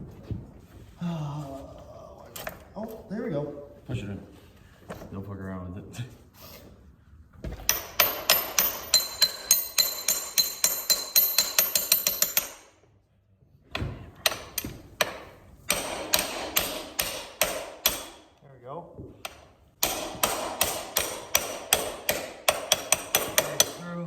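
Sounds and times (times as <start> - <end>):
hammer striking metal: 7.7 - 12.8, 14.2 - 18.3, 19.2 - 23.9.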